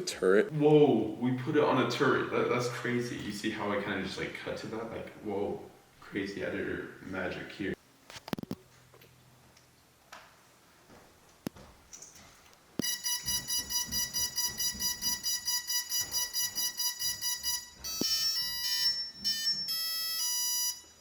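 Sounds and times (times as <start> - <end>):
high electronic motor beeps: 12.8 - 21.0
tones stepping in pitch: 12.8 - 21.0.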